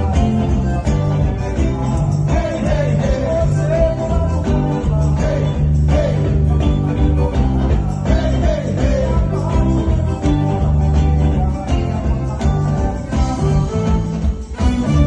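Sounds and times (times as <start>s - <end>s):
person singing: 0.0s - 13.9s
band playing loud music: 0.0s - 15.0s.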